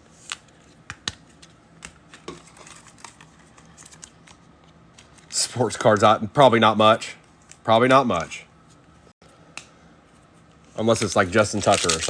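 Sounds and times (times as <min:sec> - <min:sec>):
trading cards flicking: 0:10.9 - 0:12.0.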